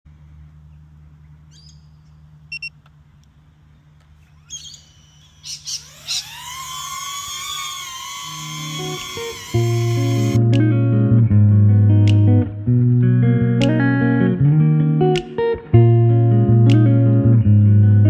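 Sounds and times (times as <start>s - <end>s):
short electronic beeps: 2.5s - 2.8s
drone motors whining: 4.0s - 10.4s.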